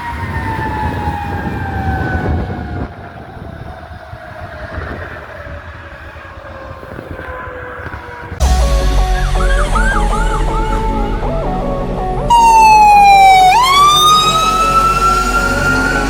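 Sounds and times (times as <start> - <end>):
low vehicle rumble: 8.4 - 16.0
siren winding down: 8.4 - 16.0.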